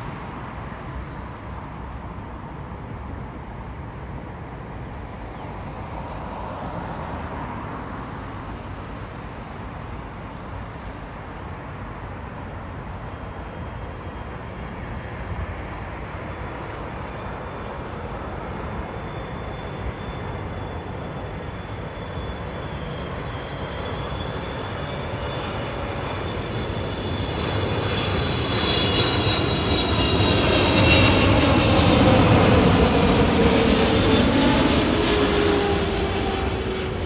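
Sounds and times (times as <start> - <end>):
low rumble of airport traffic: 0.0 - 37.0
jet engines whining: 16.8 - 37.0.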